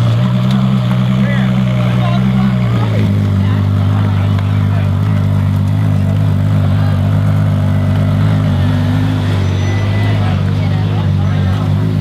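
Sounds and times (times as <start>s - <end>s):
car engine running: 0.0s - 12.0s.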